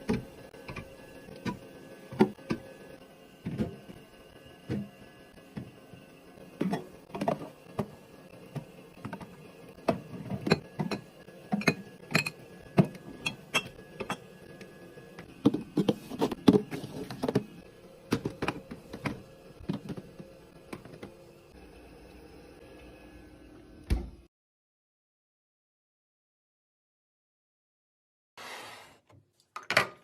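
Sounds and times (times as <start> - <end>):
containers and bottles clinking: 6.6 - 8.0, 8.6 - 14.3, 15.4 - 17.5.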